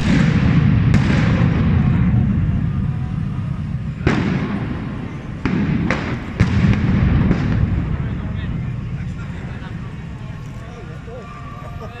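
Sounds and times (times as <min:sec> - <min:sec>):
firework bang with echo: 0:00.0 - 0:08.7
low rumble: 0:00.0 - 0:12.0.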